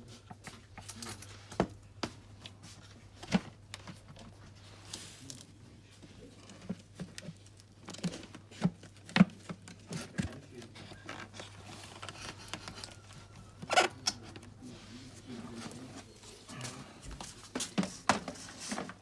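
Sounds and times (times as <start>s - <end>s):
plastic parts clicking and knocking: 6.6s - 14.5s
plastic parts rattling: 7.0s - 14.5s.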